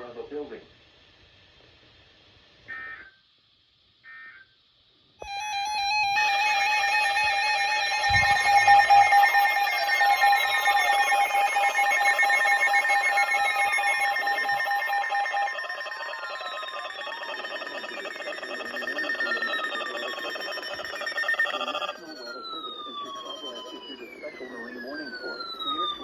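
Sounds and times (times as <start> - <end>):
falling tone sweeps: 5.2 - 26.0
warbling emergency alert tone: 5.2 - 26.0.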